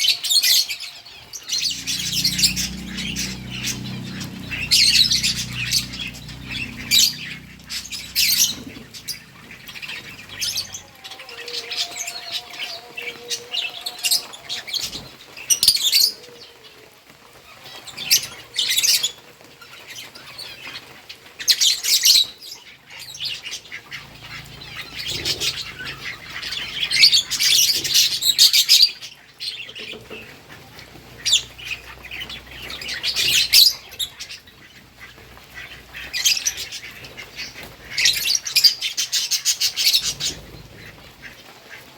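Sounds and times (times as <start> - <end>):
lovebirds chirping and squawking: 0.0 - 16.5, 17.5 - 41.9
faint low rumble: 1.4 - 11.2, 22.9 - 28.4.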